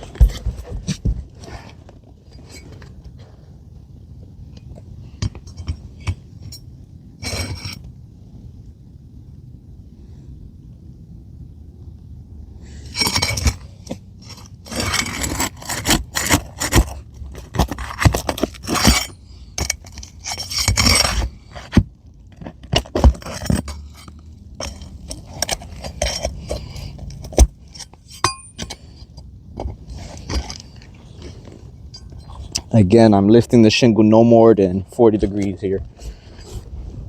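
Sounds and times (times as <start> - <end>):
metal tool scraping shingles: 5.2 - 7.9, 12.7 - 32.5.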